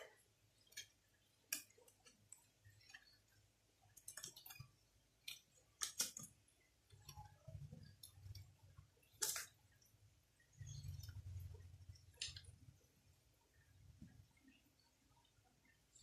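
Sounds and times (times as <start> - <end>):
clicks and rustles of handling: 3.9 - 8.5.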